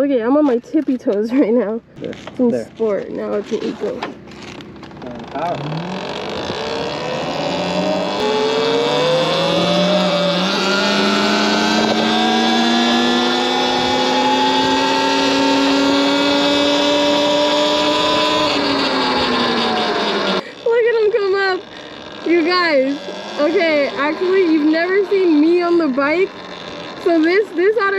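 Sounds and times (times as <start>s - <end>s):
electric bike motor whining: 3.3s - 27.9s.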